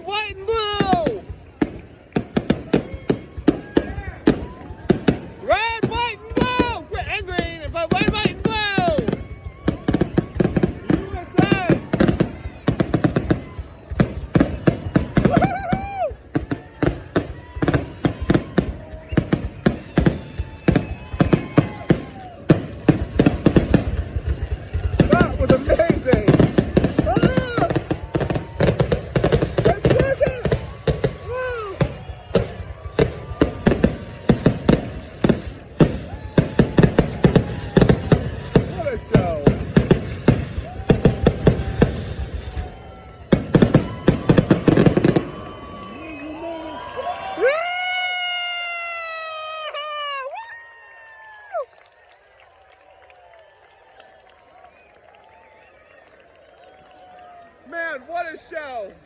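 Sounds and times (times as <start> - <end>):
fireworks exploding: 0.0 - 50.2.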